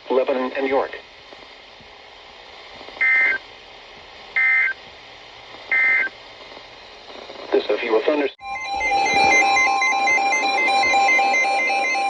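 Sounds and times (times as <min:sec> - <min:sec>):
faint steady hiss: 0:00.0 - 0:08.4.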